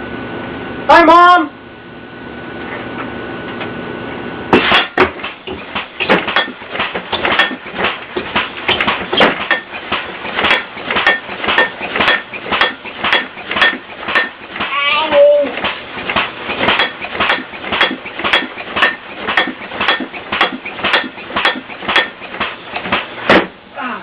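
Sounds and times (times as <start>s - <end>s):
rapid knocks and clanks: 4.5s - 23.6s.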